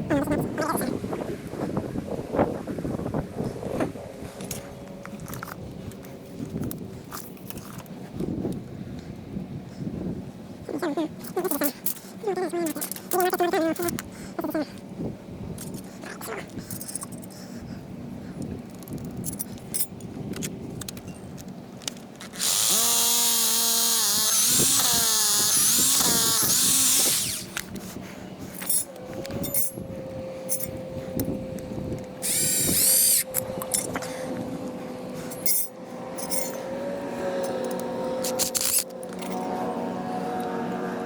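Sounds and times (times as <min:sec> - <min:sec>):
power drill running under load: 0:22.3 - 0:27.6, 0:32.2 - 0:33.3.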